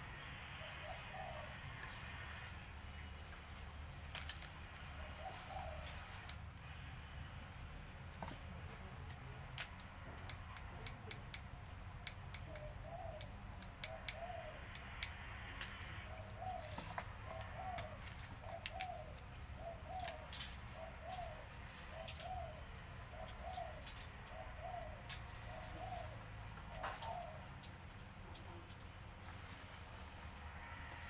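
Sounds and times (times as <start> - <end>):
sharp ringing clicks: 10.2 - 16.0
bird calling: 10.3 - 15.4.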